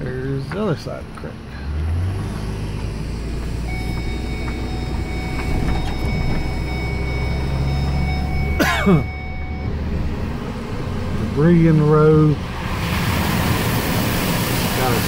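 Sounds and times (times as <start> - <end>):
truck engine low rumble: 0.0 - 15.0.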